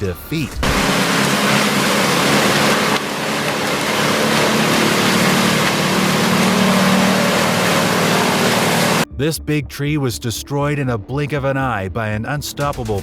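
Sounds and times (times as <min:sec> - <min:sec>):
engine running: 0:00.0 - 0:09.1
wood grinding noise: 0:00.0 - 0:09.1.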